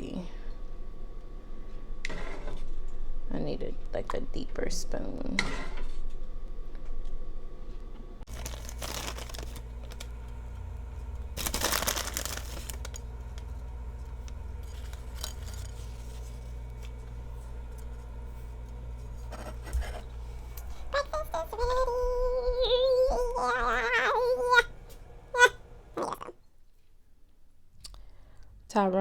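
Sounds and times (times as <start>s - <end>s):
steady low hum: 0.0s - 26.0s
rustling: 8.3s - 21.4s.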